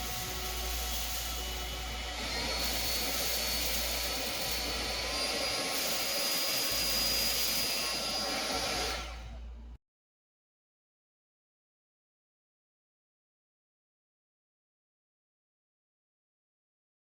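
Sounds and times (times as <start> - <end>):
stick vacuum running: 0.0 - 9.4.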